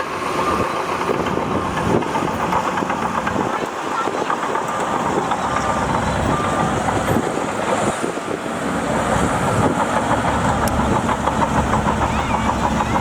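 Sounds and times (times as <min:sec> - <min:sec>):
heavy machinery diesel engine: 0:00.0 - 0:13.0
fast even clattering ticks: 0:01.0 - 0:06.2, 0:09.7 - 0:13.0.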